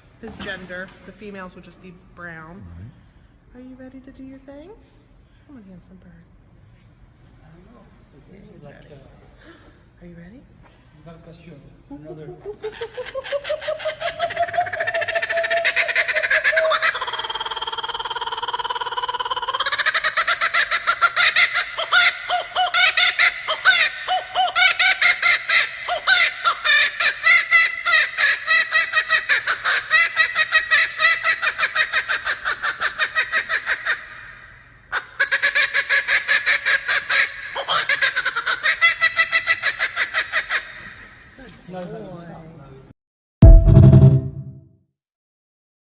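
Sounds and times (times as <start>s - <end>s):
kookaburra laughing call: 12.2s - 40.9s.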